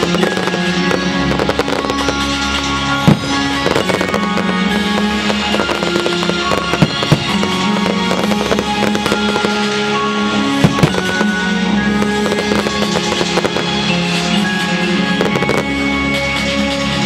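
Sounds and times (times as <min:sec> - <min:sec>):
small firework cracks: 0:00.0 - 0:09.8, 0:12.0 - 0:13.8
fireworks bangs: 0:00.0 - 0:16.1
music: 0:00.0 - 0:17.0.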